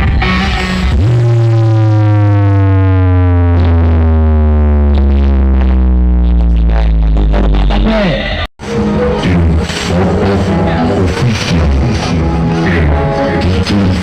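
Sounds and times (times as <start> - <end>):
electronic dance music with heavy bass: 0.0 - 14.0
synth tone sliding down in pitch: 0.5 - 6.8.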